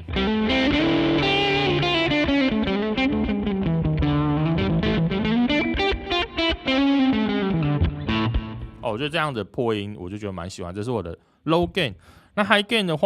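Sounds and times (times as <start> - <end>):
electric guitar lead: 0.0 - 8.9.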